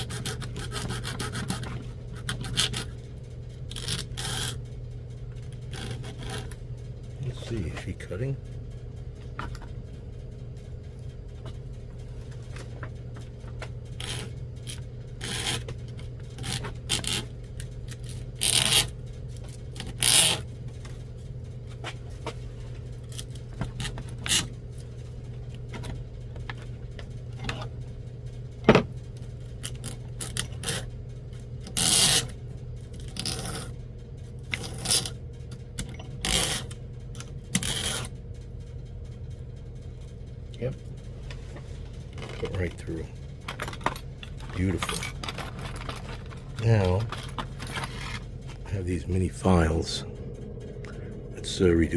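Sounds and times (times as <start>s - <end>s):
cutting tool scraping copper pipe: 0.0s - 2.9s, 3.7s - 4.6s, 5.6s - 6.6s, 14.0s - 15.7s, 16.3s - 17.3s, 18.4s - 18.9s, 19.8s - 20.5s, 23.7s - 24.5s, 31.7s - 32.3s, 33.1s - 33.7s, 34.5s - 35.2s, 36.2s - 36.8s, 37.5s - 38.1s
steady low hum: 0.0s - 51.9s.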